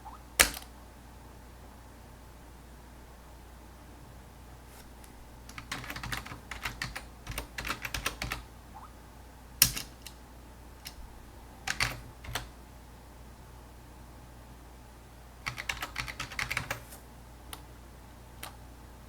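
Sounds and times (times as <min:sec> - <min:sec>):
computer keyboard typing: 0:00.4 - 0:00.7, 0:05.5 - 0:08.4, 0:09.6 - 0:10.2, 0:11.7 - 0:12.5, 0:15.4 - 0:16.9
sharp single key press: 0:00.4 - 0:00.7.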